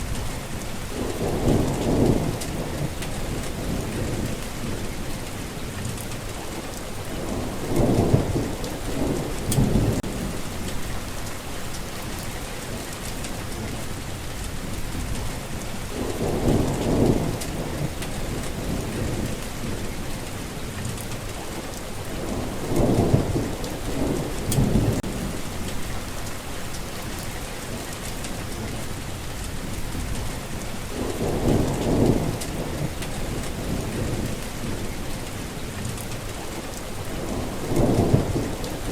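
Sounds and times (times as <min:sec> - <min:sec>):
thunder rolling: 0:00.0 - 0:05.1, 0:07.2 - 0:11.3, 0:14.6 - 0:20.0, 0:22.2 - 0:26.2, 0:29.6 - 0:35.1, 0:37.2 - 0:38.9
rain hissing: 0:00.0 - 0:38.9.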